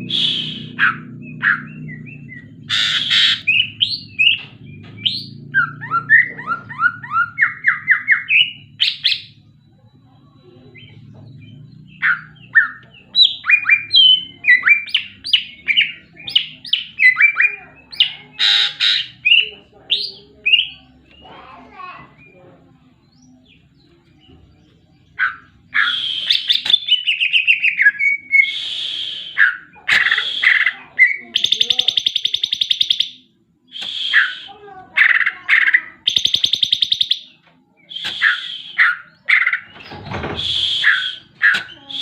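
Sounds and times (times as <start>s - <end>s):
songbird whistling and buzzing: 0.0s - 9.4s, 25.2s - 34.6s, 35.6s - 42.0s.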